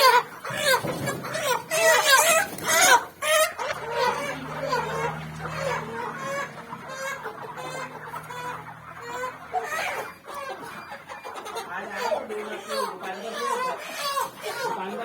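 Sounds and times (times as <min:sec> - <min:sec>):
chickens clucking: 0:00.0 - 0:15.0.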